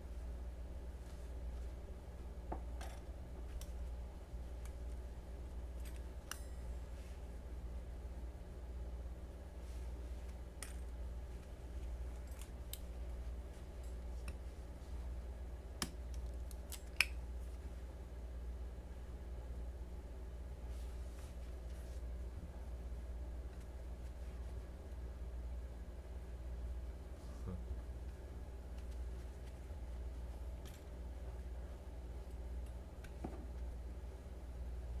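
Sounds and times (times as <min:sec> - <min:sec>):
steady low hum: 0:00.0 - 0:35.0
knife handling clicks: 0:15.8 - 0:17.2.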